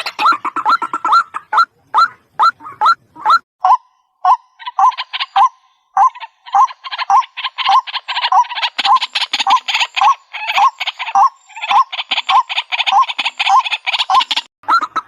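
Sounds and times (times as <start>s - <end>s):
harsh chattering bird call: 0.0s - 15.0s
waterhen calling: 0.0s - 15.0s.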